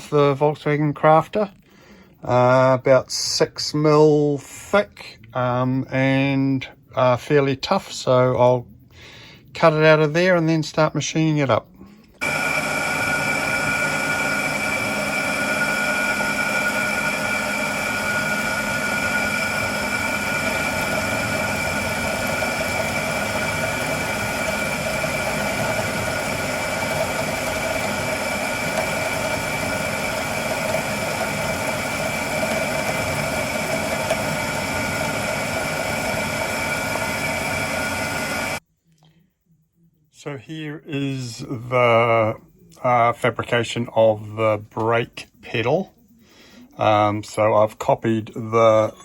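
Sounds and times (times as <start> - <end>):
power tool cutting steel: 12.2 - 38.6.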